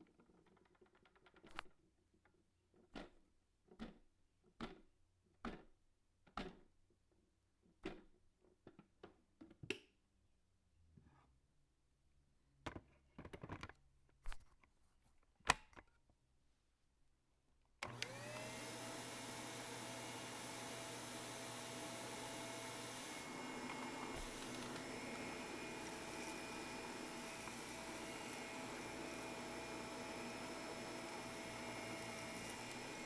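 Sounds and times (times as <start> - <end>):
vacuum cleaner motor: 17.8 - 33.0.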